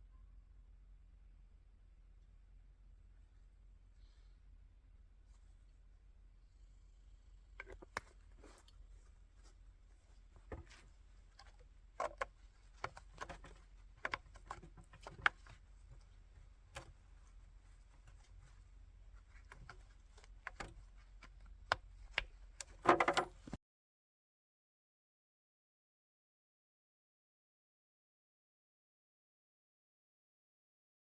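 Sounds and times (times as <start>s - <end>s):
small clicks and knocks: 7.6s - 23.6s.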